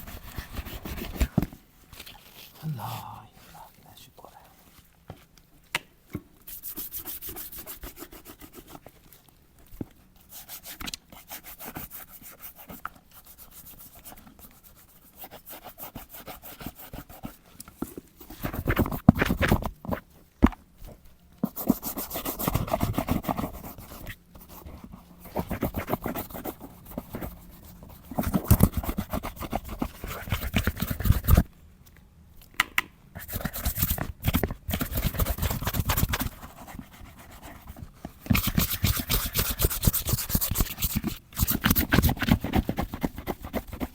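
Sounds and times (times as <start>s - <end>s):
brush scrubbing leather boot: 38.3s - 43.9s.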